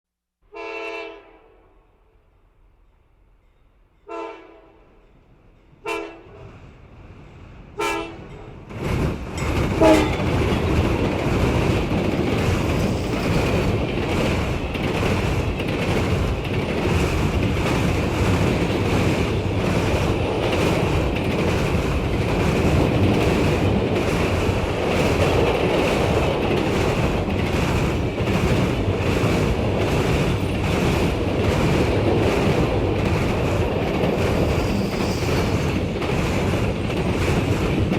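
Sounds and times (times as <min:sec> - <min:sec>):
locomotive horn blasts: 0:00.5 - 0:01.7, 0:04.1 - 0:04.8, 0:05.8 - 0:06.4, 0:07.8 - 0:08.3, 0:09.8 - 0:10.2
train passing rumble: 0:01.8 - 0:37.9
wheels clacking over rail joints: 0:08.2 - 0:37.9.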